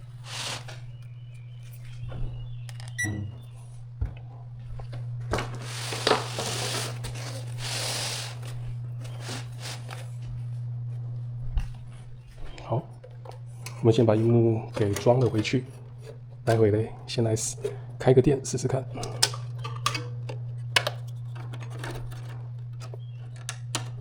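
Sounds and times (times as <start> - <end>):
rustling and sliding: 0.0 - 0.9, 5.3 - 10.4
steady low hum: 0.0 - 24.0
parts clicking and knocking: 18.8 - 24.0.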